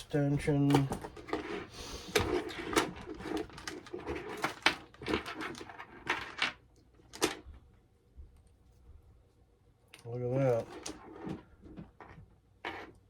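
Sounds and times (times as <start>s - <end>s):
packaging rustling: 0.5s - 7.4s
plastic parts clicking and clacking: 0.6s - 7.4s.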